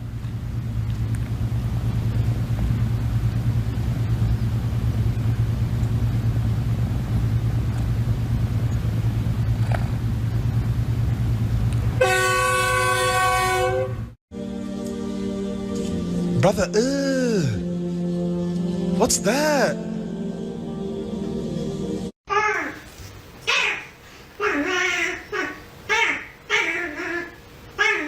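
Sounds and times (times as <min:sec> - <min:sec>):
horn blast: 0:12.0 - 0:22.1.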